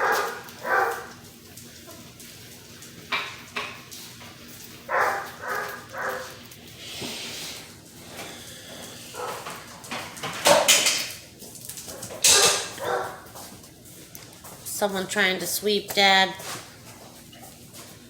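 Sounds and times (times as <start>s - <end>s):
puppies yipping: 0.0s - 1.2s, 4.9s - 6.4s.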